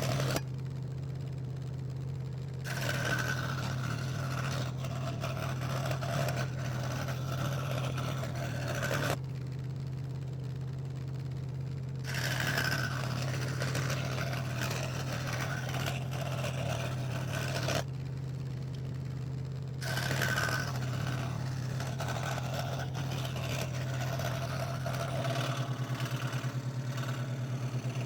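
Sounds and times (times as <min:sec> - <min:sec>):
saw blade cutting plywood: 0:00.0 - 0:00.4, 0:02.6 - 0:09.2, 0:12.0 - 0:17.9, 0:19.8 - 0:28.0
scroll saw humming: 0:00.0 - 0:00.6, 0:02.6 - 0:09.2, 0:12.0 - 0:17.9, 0:19.8 - 0:28.0.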